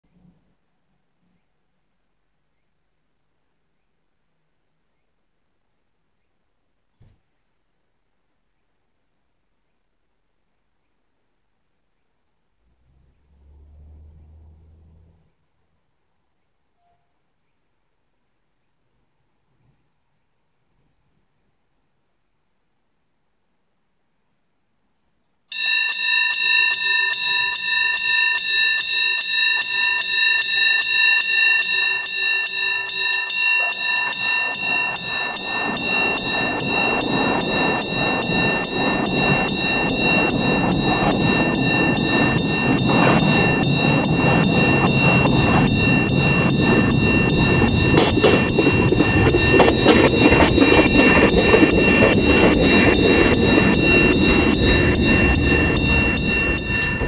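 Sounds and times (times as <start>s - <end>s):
train rumble: 12.6s - 15.4s, 26.4s - 57.0s
level crossing bell ringing: 25.5s - 57.0s.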